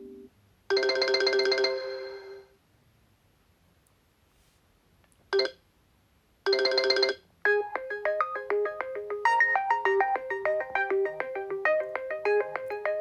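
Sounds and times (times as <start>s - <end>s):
phone ringtone melody: 0.7s - 2.4s, 6.5s - 13.0s.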